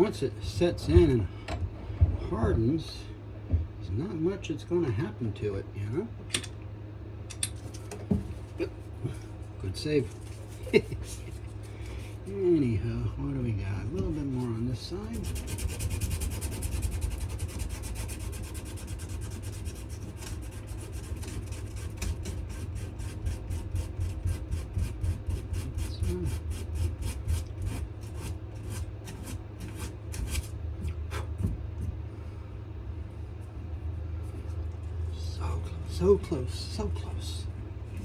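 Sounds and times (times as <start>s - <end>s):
hand sanding strokes: 10.2s - 12.2s, 14.0s - 30.5s.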